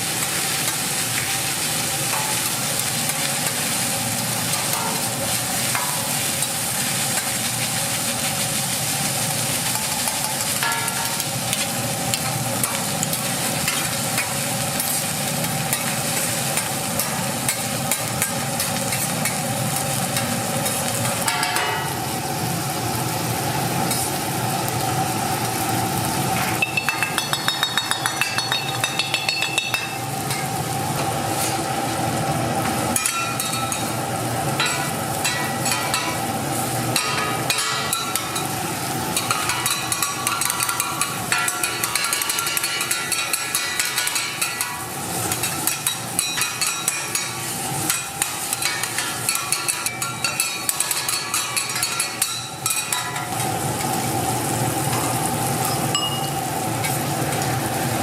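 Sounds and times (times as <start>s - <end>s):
rice sizzling in a pan: 0.0s - 58.0s
metal spatulas tapping a pan: 2.1s - 3.6s, 5.7s - 6.6s, 9.7s - 15.0s, 15.7s - 19.4s, 20.2s - 22.0s, 26.6s - 30.5s, 33.0s - 33.9s, 34.6s - 36.2s, 36.9s - 38.6s, 39.2s - 53.4s.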